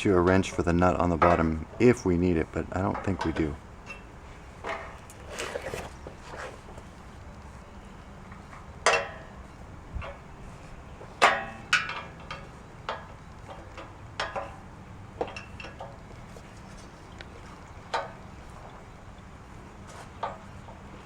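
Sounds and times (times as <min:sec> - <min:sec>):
metal clinks and clanks: 0:11.2 - 0:16.0.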